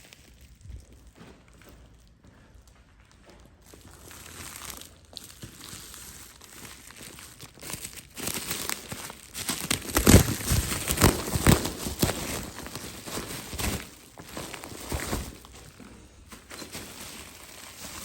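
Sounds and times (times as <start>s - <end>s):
crinkling plastic and paper: 0.0s - 2.2s, 3.0s - 18.0s
packing material tearing: 4.0s - 15.8s, 16.4s - 18.0s.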